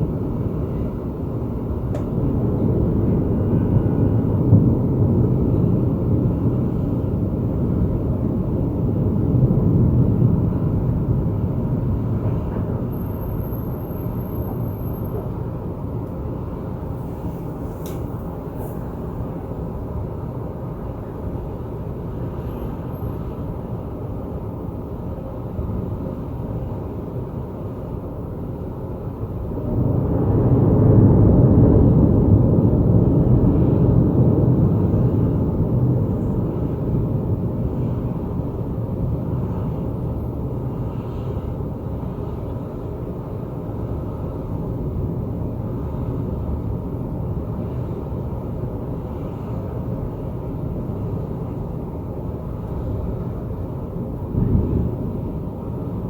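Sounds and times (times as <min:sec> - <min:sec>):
thunder rumbling: 0:01.5 - 0:13.4, 0:29.3 - 0:40.1, 0:52.9 - 0:56.0.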